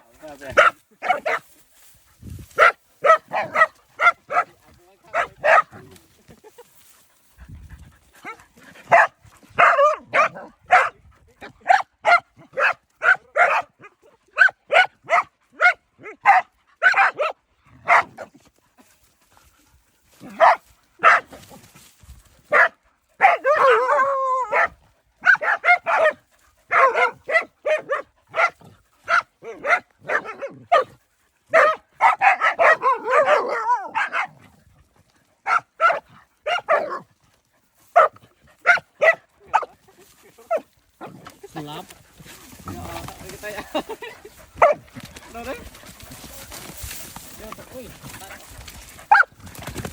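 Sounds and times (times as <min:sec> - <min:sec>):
dogs barking: 0:00.4 - 0:01.5, 0:02.6 - 0:06.0, 0:08.2 - 0:18.3, 0:20.2 - 0:21.4, 0:22.5 - 0:34.5, 0:35.4 - 0:37.1, 0:37.9 - 0:39.8, 0:40.4 - 0:45.7, 0:49.0 - 0:49.4.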